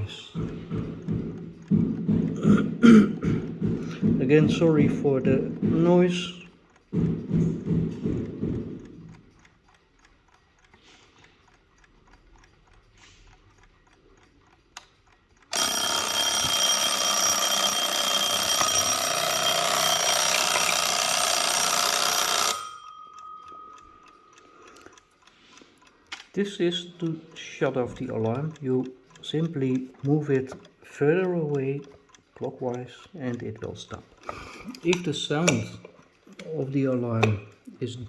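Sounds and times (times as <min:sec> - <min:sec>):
clock ticking: 0:00.0 - 0:38.0
alarm clock bell ringing: 0:15.5 - 0:24.6.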